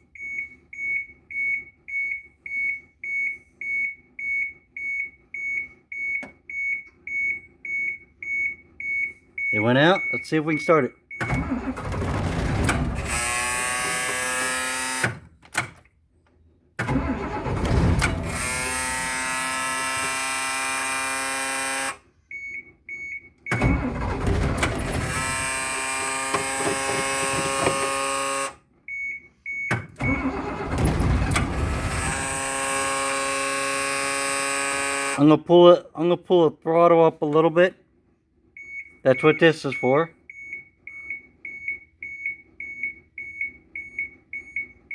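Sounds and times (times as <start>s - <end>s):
dashboard buzzer beeps: 0.1s - 11.6s, 18.2s - 30.7s, 38.6s - 44.8s
bus engine cranking: 11.1s - 15.8s, 16.8s - 22.0s, 23.4s - 28.6s, 29.5s - 35.2s.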